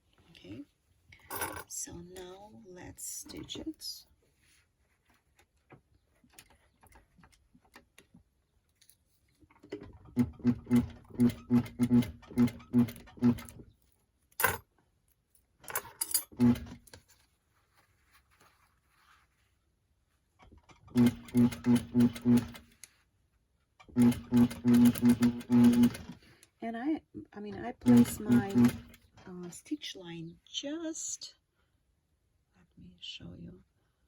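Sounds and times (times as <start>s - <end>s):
sewing machine stitching: 9.5s - 13.6s, 15.7s - 16.9s, 20.4s - 22.8s, 23.8s - 26.3s, 27.7s - 29.3s.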